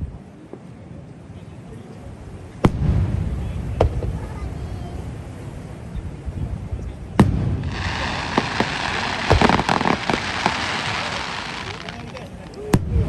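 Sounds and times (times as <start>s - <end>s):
firework bang: 2.6s - 4.3s, 7.2s - 13.0s
firework crackling: 7.2s - 13.0s.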